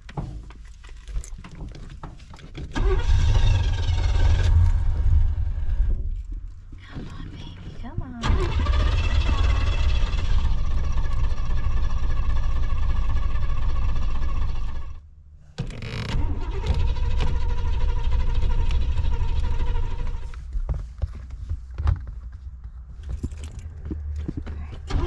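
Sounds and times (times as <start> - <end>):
car starter cranking engine: 2.5 - 6.5, 7.9 - 20.4, 24.8 - 25.0.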